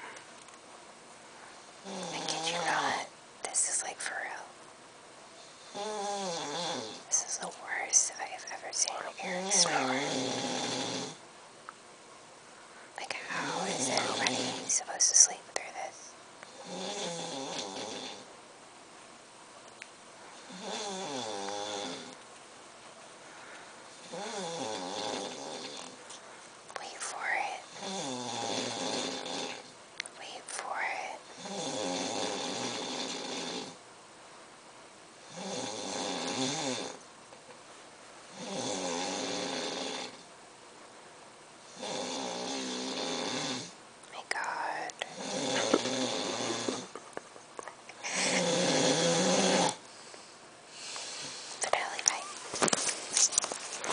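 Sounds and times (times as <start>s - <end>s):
snoring: 1.8s - 3.1s, 5.4s - 7.4s, 9.1s - 11.2s, 13.3s - 14.8s, 16.5s - 18.3s, 20.4s - 22.2s, 23.9s - 26.0s, 27.5s - 29.8s, 31.2s - 33.8s, 35.2s - 37.0s, 38.3s - 40.3s, 41.7s - 43.8s, 44.6s - 46.9s, 48.0s - 49.9s, 50.7s - 51.8s.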